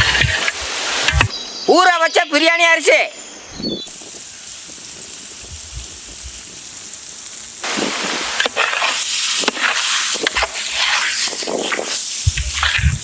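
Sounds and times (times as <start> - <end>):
rice sizzling and crackling in pot: 3.8 - 13.0.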